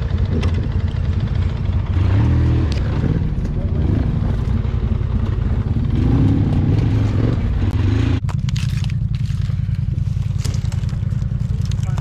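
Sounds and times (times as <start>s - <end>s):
quad bike engine revving: 0.0s - 8.3s.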